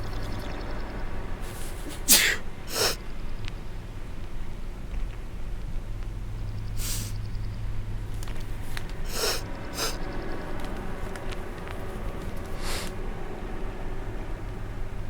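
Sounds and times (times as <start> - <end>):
steady low hum: 0.0 - 15.0
man snorting and sniffing: 1.4 - 3.0, 6.8 - 7.2, 9.1 - 10.0, 12.6 - 13.0.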